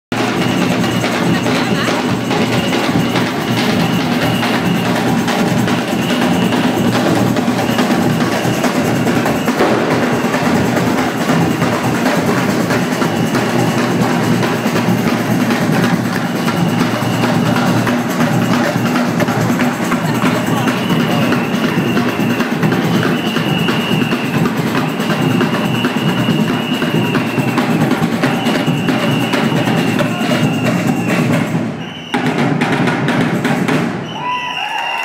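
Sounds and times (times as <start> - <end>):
fast loud drumming: 0.1 - 35.0.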